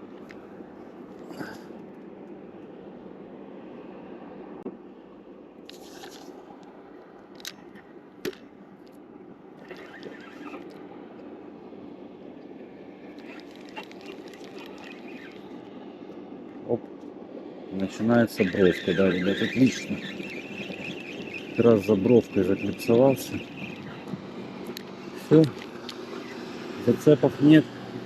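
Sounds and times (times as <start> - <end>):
spinning reel being wound: 9.6 - 10.7, 13.2 - 15.7
sharp clicks: 13.2 - 15.7.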